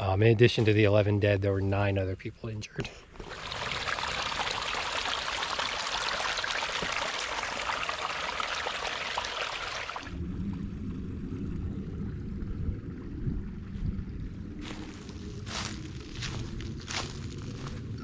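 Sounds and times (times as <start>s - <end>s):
stream trickling and splashing: 3.2s - 10.2s, 14.6s - 18.0s
wind rumble on microphone: 10.1s - 18.0s.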